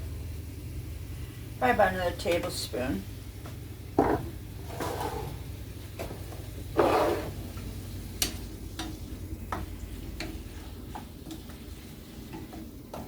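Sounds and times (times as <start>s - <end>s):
chicken sizzling in a pan: 0.0s - 13.0s
utensil clicking against pan: 8.2s - 11.6s.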